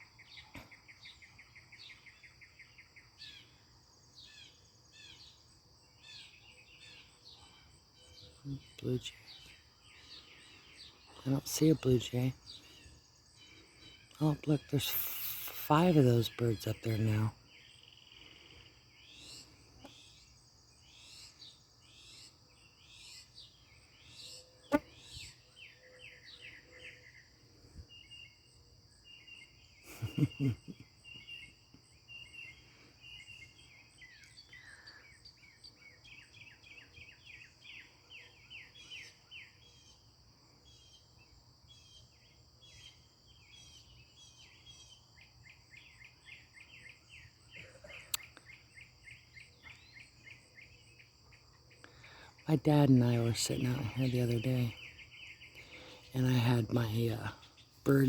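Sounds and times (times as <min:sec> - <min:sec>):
mockingbirds singing varied phrases: 0:06.0 - 0:28.4, 0:51.8 - 0:58.0.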